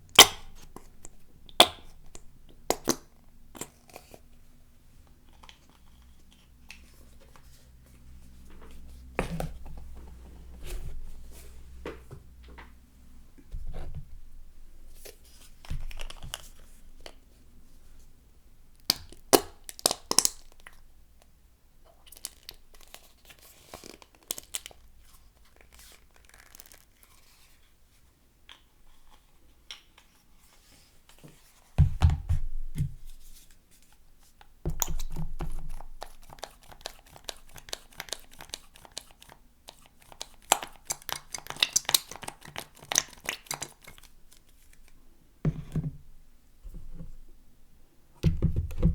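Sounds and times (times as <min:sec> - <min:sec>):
soap pump thuds and squirts: 0:45.5 - 0:46.1, 0:48.2 - 0:48.9.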